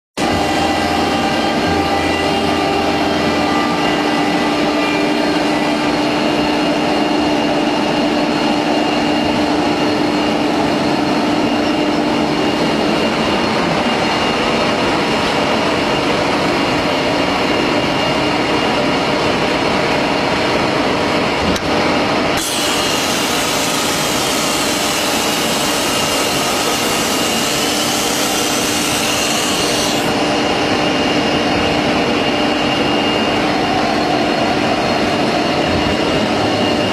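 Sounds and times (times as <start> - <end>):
wood router spindle whine: 22.3 - 36.9.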